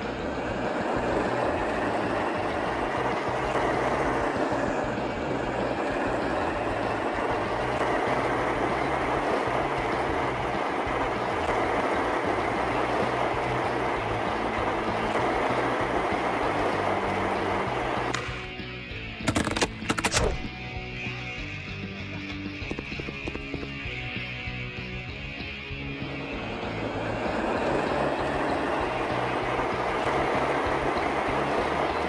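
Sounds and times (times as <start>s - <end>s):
motor running steadily: 0.0s - 32.0s.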